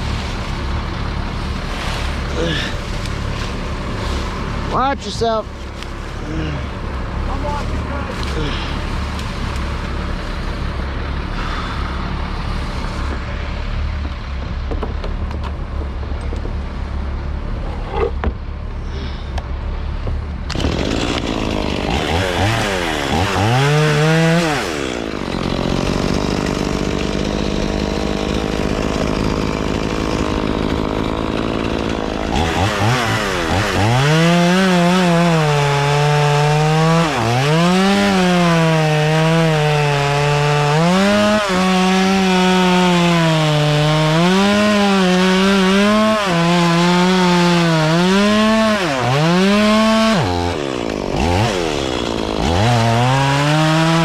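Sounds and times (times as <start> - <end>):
chainsaw cutting wood: 0.0 - 6.7, 20.4 - 54.0.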